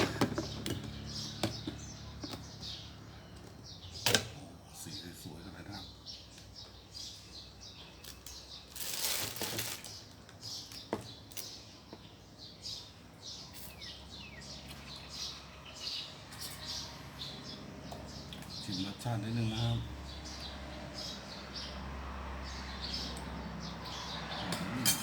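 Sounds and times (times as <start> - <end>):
small birds chirping: 0.0 - 25.0.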